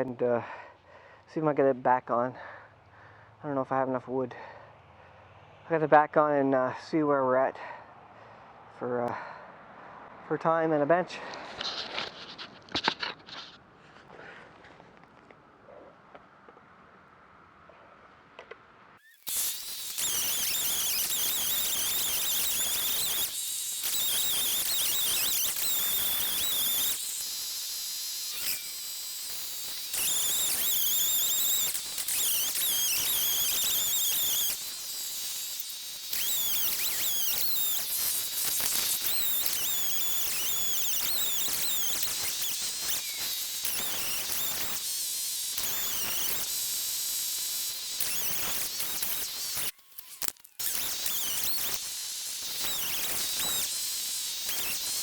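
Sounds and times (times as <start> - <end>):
chainsaw cutting wood: 18.9 - 55.0.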